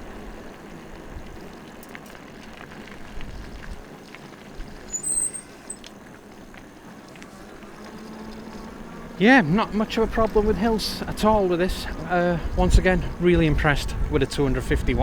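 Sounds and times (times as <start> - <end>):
faint ticks: 0.0 - 9.2
electric bike tyre rumble: 0.0 - 15.0
wind noise: 2.4 - 5.8, 9.7 - 15.0
high squeak: 4.9 - 5.8.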